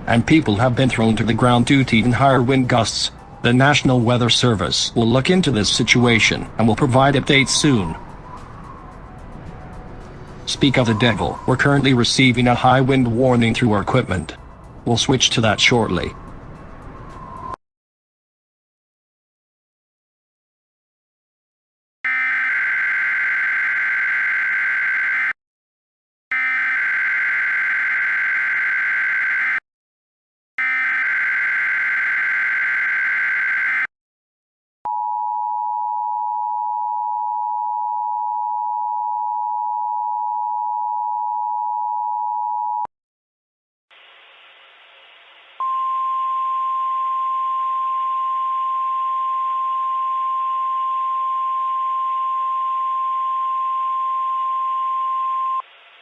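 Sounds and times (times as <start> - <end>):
single steady tone: 34.9 - 42.9, 45.6 - 55.7
static hiss: 43.9 - 45.6
two-tone attention signal: 45.6 - 55.6.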